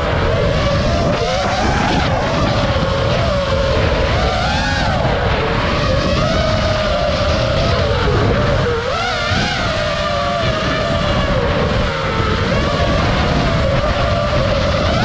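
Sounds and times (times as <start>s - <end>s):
quadcopter motors whining: 0.0s - 15.0s
wind noise: 0.0s - 15.0s.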